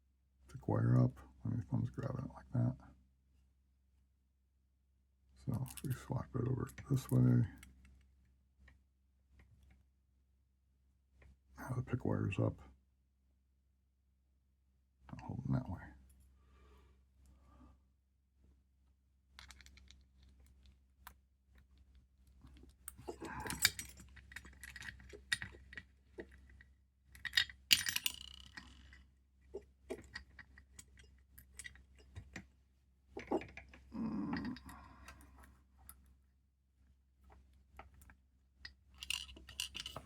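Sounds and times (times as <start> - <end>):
metal lock-picking tools clicking: 22.9 - 26.4, 27.2 - 29.0, 39.0 - 40.0.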